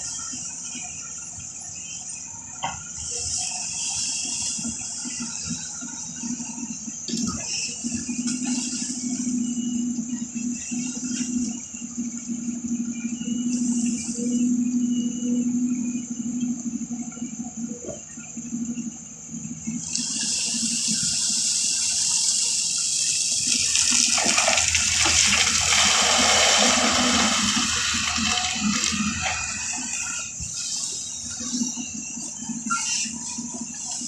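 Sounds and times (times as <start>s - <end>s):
rushing water-like hiss: 19.8s - 31.6s.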